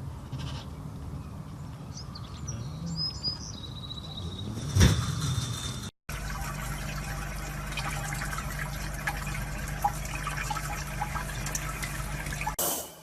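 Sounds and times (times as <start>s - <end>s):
water trickling and splashing: 6.1s - 12.6s.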